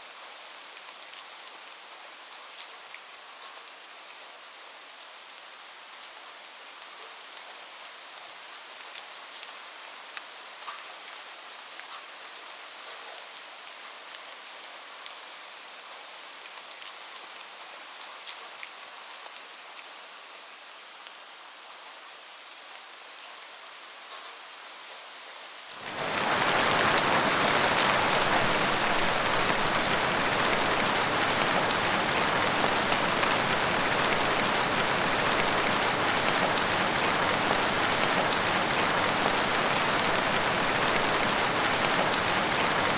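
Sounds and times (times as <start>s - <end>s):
light rain pattering: 0.0s - 21.2s, 24.0s - 42.9s
heavy rain: 25.7s - 42.9s.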